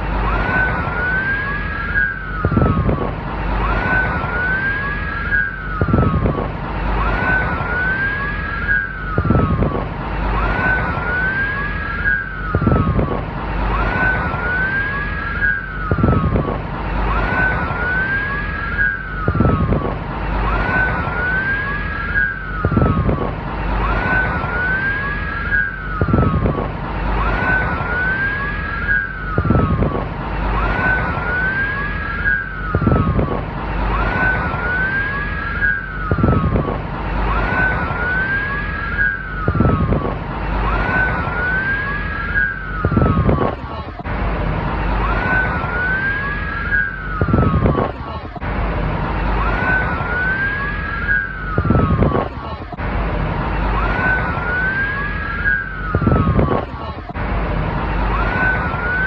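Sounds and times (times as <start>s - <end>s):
police siren wailing: 0.0s - 44.1s, 53.6s - 57.2s
noisy background: 0.0s - 59.0s.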